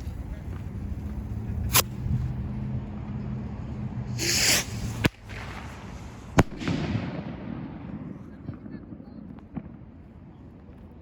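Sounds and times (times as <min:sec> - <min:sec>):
bottle rocket launch hiss: 0:04.2 - 0:06.4
firework cracks: 0:04.2 - 0:08.7.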